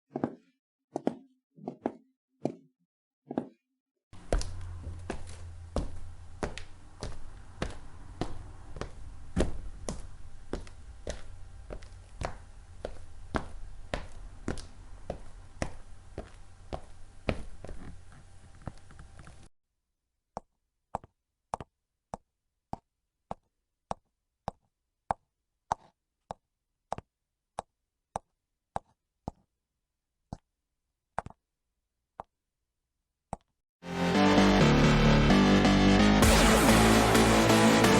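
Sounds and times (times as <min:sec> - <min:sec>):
footsteps walking: 0:04.2 - 0:19.5.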